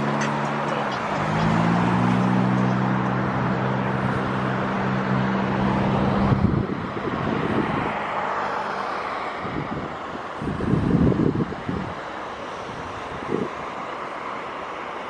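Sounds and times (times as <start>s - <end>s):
road noise: 0.0s - 15.0s
vehicle engine humming: 0.0s - 15.0s
wind on microphone: 5.6s - 8.0s, 9.4s - 12.0s, 12.6s - 13.6s.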